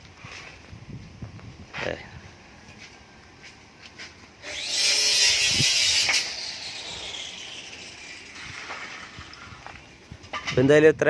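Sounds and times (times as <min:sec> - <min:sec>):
power saw cutting wood: 0:04.4 - 0:10.1.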